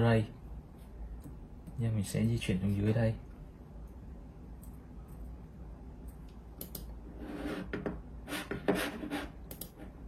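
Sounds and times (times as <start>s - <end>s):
mouse sliding on desk: 7.1s - 10.0s.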